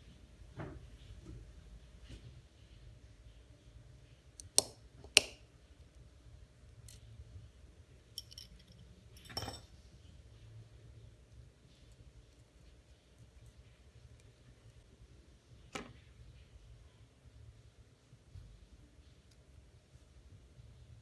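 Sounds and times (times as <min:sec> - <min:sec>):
metal parts ringing clink: 0:08.2 - 0:09.7.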